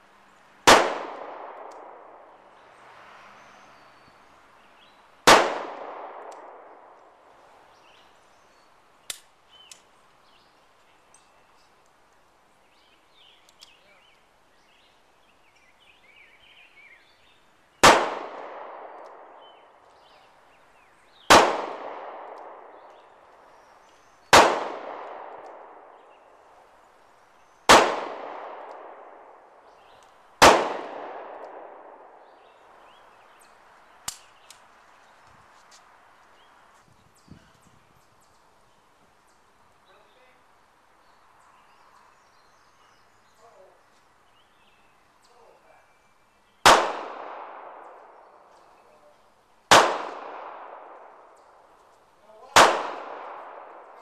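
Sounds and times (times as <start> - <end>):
handgun shots: 0.7 - 2.0, 49.7 - 50.8, 52.5 - 54.0.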